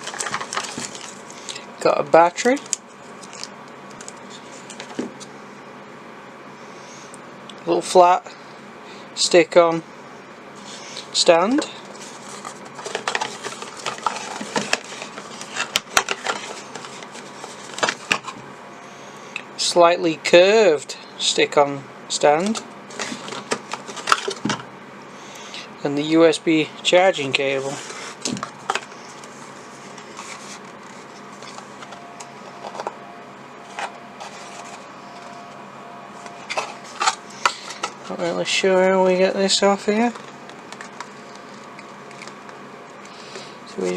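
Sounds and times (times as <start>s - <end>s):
packaging rustling: 0.0s - 1.6s, 2.4s - 5.2s, 11.8s - 18.4s, 22.9s - 24.6s, 27.6s - 33.0s, 33.6s - 35.4s, 36.2s - 38.1s, 40.0s - 42.6s
plastic packaging being handled: 0.0s - 1.6s, 11.9s - 18.4s, 22.5s - 24.6s, 33.6s - 35.4s.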